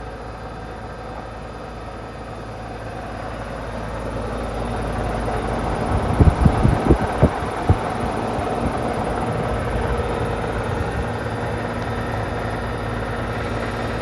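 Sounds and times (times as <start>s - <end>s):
heat pump humming: 0.0s - 14.0s.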